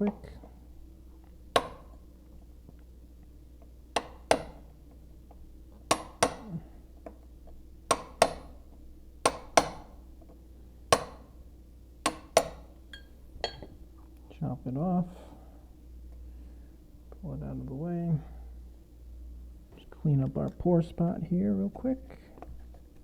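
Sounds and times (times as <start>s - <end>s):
hammer striking chisel: 1.5s - 2.0s, 4.0s - 4.7s, 5.8s - 7.2s, 7.9s - 10.0s, 10.9s - 11.4s, 12.0s - 13.7s.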